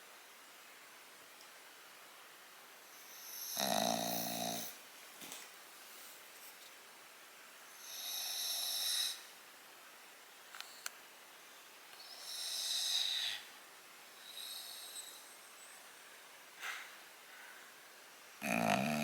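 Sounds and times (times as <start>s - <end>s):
dog snoring: 3.1s - 4.8s, 7.8s - 9.2s, 18.4s - 19.0s.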